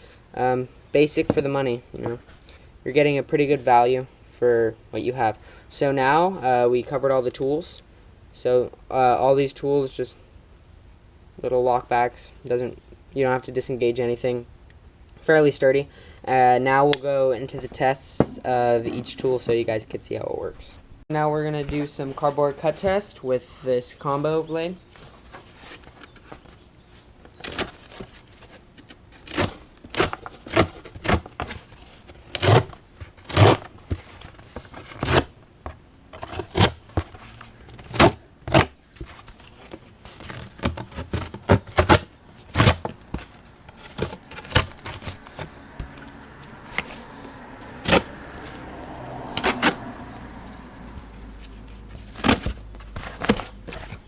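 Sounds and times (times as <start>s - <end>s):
blade sawing through cardboard: 29.2s - 31.6s, 32.2s - 34.0s, 34.8s - 35.3s, 47.8s - 48.2s.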